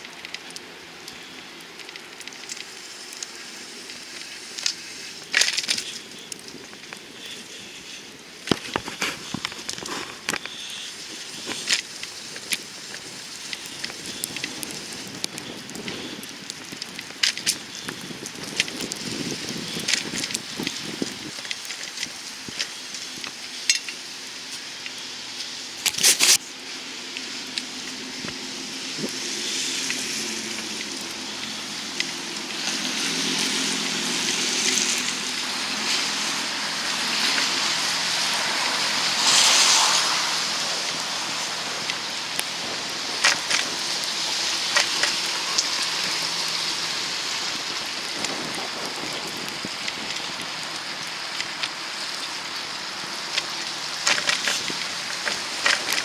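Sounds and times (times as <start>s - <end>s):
traffic on wet roads: 0.0s - 56.0s
vehicle passing: 26.7s - 47.9s.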